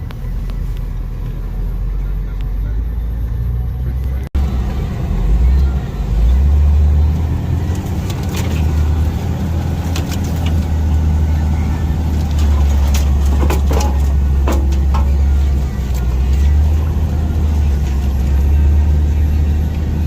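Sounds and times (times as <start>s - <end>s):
car engine droning: 0.0s - 20.0s
knocks and rattles: 7.6s - 11.2s, 11.8s - 16.8s.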